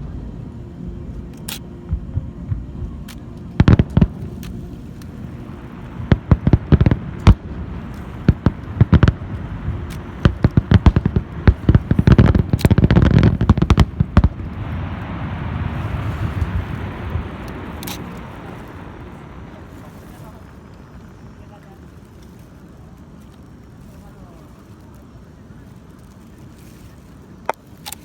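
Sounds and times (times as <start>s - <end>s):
fireworks booming: 0.0s - 20.8s
steady rushing noise: 0.0s - 27.6s.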